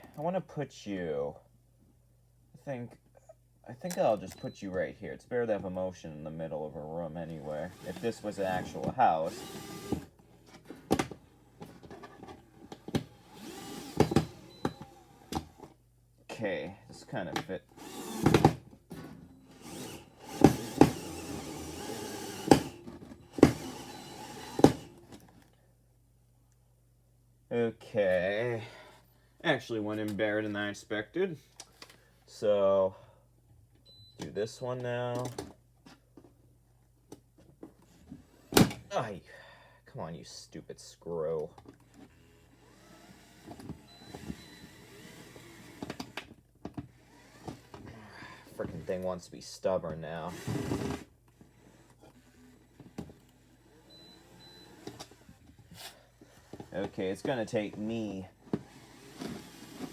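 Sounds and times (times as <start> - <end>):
cordless screw gun whirring: 7.6 - 10.2, 12.8 - 15.6, 17.8 - 18.6, 19.4 - 25.3, 41.9 - 48.1, 50.3 - 56.8, 58.4 - 59.9.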